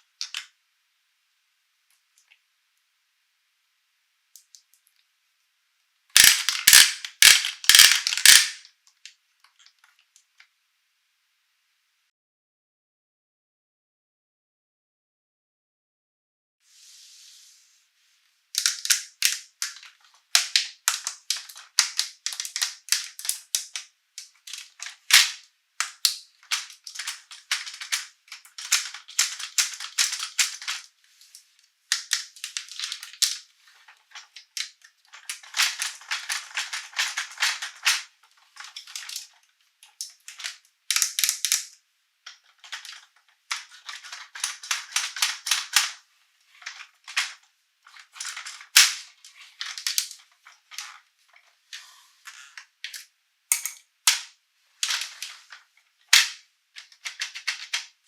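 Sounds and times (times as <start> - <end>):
plastic packaging crinkling: 6.2 - 8.7, 18.6 - 31.3, 31.9 - 41.7, 42.3 - 51.5, 54.8 - 58.0.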